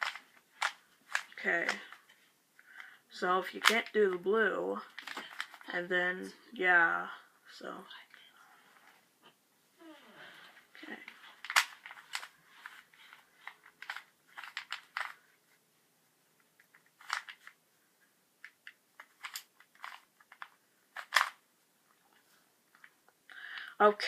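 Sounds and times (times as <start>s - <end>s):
puzzle cube clicking turns: 0.0s - 3.0s, 3.6s - 4.2s, 4.9s - 5.7s, 11.0s - 15.3s, 16.6s - 17.6s, 18.4s - 21.4s.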